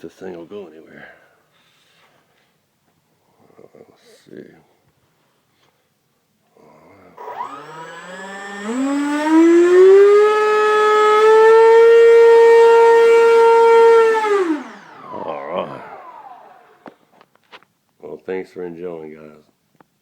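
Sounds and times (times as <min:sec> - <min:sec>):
electric ducted fan whine: 0:07.2 - 0:17.4.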